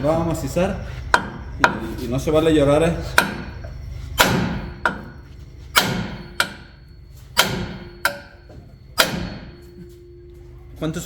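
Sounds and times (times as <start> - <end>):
sledgehammer striking steel: 3.2 - 3.6, 4.2 - 9.9.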